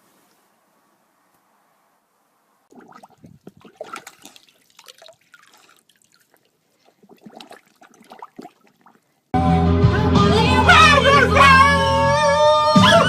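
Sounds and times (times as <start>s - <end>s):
water sloshing and dripping: 2.7s - 9.3s.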